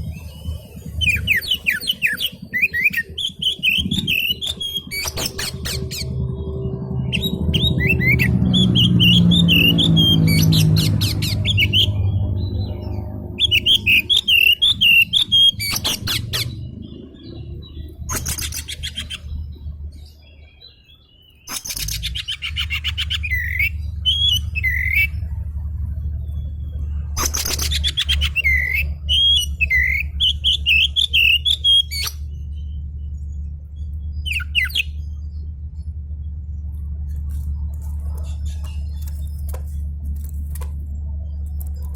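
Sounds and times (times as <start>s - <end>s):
bird warbling song: 0.0s - 41.9s
bird harsh rattling calls: 0.9s - 6.3s, 13.4s - 16.7s, 18.0s - 19.5s, 21.5s - 25.1s, 27.2s - 32.3s.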